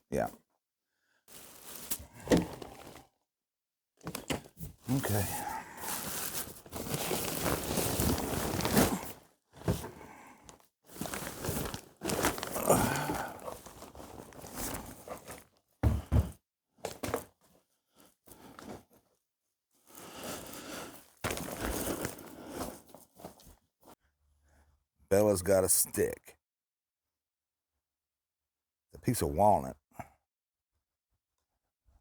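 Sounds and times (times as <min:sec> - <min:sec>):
crinkling and rustling: 0:01.3 - 0:03.1, 0:04.0 - 0:16.2, 0:19.9 - 0:24.0.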